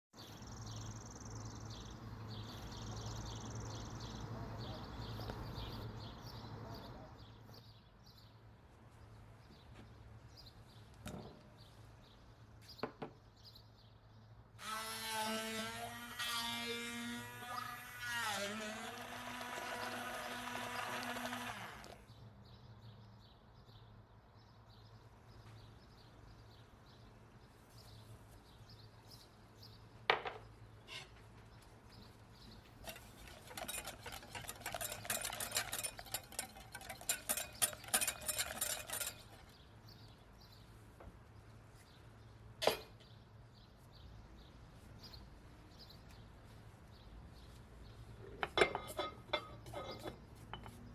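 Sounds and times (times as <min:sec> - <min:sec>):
blender motor running: 0:18.2 - 0:22.0
rapid irregular clattering: 0:32.8 - 0:39.4.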